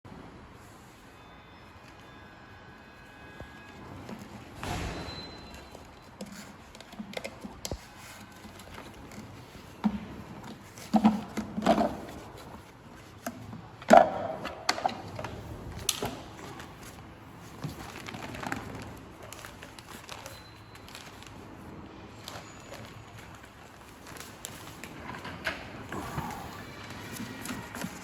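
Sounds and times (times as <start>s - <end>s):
objects knocking and clattering: 4.1s - 16.6s.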